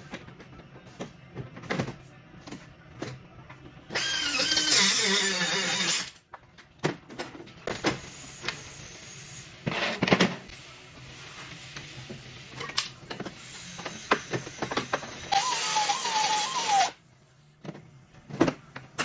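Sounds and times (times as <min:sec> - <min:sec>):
knocks and clatters of tools: 0:00.0 - 0:03.7, 0:06.3 - 0:08.0.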